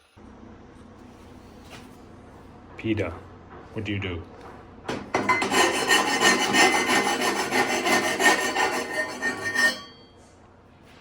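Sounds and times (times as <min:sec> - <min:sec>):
hand file rasping on metal: 0:05.1 - 0:10.0.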